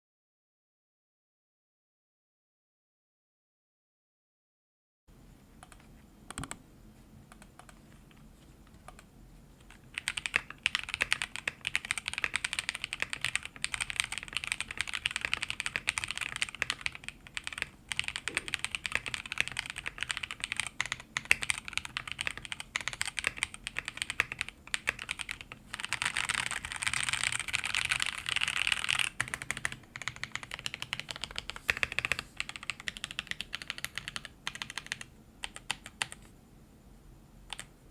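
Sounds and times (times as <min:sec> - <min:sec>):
mechanical keyboard typing: 0:05.6 - 0:06.6, 0:09.7 - 0:36.3, 0:37.5 - 0:37.7.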